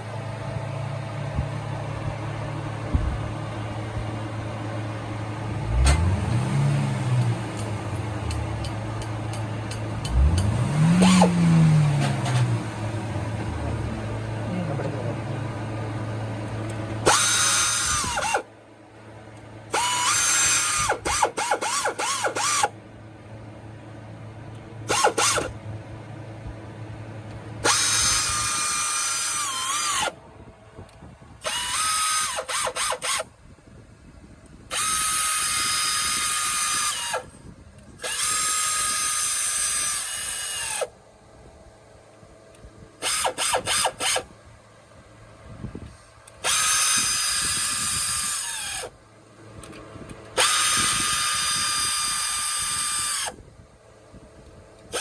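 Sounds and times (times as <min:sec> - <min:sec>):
power drill motor whining: 0:10.0 - 0:11.5, 0:17.0 - 0:18.5, 0:19.7 - 0:22.8, 0:24.9 - 0:25.6, 0:27.6 - 0:30.2, 0:31.4 - 0:33.3, 0:34.7 - 0:40.9, 0:43.0 - 0:44.3, 0:46.4 - 0:49.0, 0:50.3 - 0:53.4.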